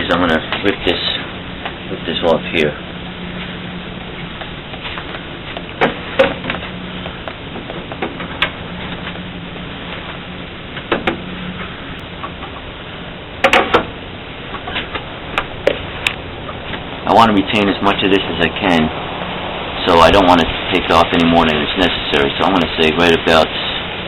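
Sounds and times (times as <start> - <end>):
steady hiss with low hum: 0.0 - 24.0
wood and tools knocking: 4.4 - 9.2, 10.8 - 11.2, 13.4 - 13.9.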